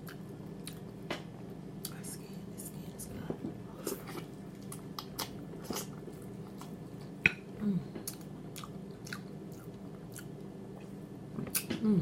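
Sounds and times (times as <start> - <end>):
wet chewing and lip smacking: 4.0 - 6.8, 8.0 - 11.7
person humming: 7.6 - 8.1, 11.7 - 12.0.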